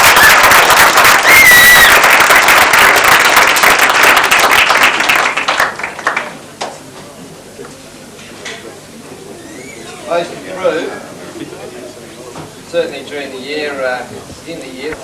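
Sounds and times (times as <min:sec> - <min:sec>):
audience clapping: 0:00.0 - 0:06.8
high whistle: 0:09.4 - 0:09.9.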